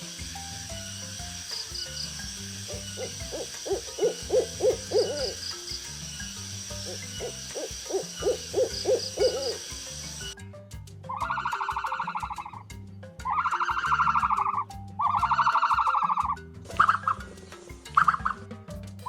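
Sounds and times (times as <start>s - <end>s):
owl hooting: 2.6s - 10.4s, 11.1s - 12.6s, 13.2s - 17.2s.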